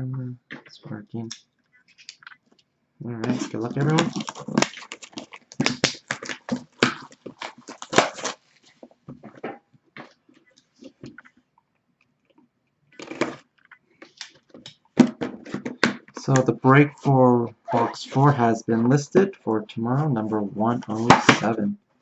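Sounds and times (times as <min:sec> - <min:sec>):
clicks and rustles: 0:00.5 - 0:16.5
packaging tearing and crackling: 0:03.3 - 0:08.9.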